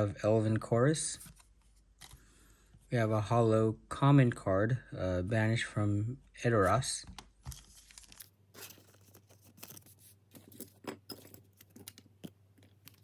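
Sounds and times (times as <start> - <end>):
trading cards clicking and scraping: 7.5 - 13.0.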